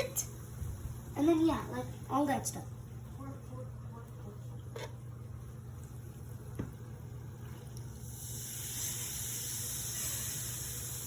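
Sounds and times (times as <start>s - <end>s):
vinegar and baking soda fizzing: 5.6s - 11.0s.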